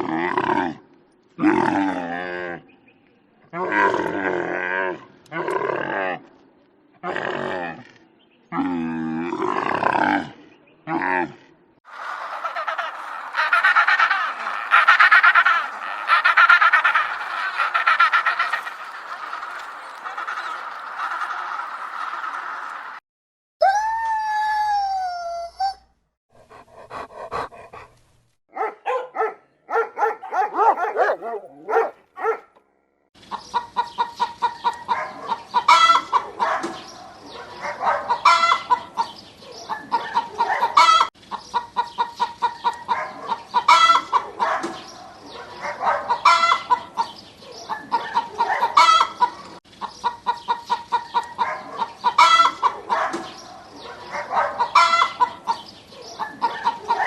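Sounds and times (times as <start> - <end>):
chickens clucking and squawking: 11.9 - 23.0, 33.3 - 57.0.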